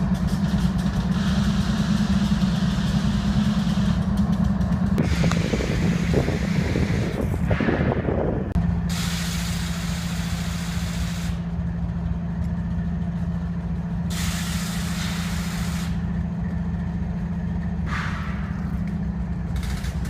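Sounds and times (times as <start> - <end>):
diesel locomotive engine drone: 0.0 - 20.0
compressed air hissing: 8.9 - 11.5, 14.1 - 16.0.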